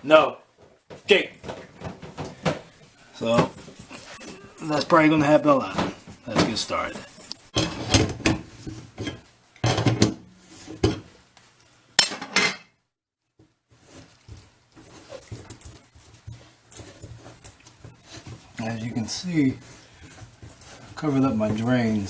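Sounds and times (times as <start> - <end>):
metal tools clanking: 1.2 - 8.4, 20.1 - 22.0.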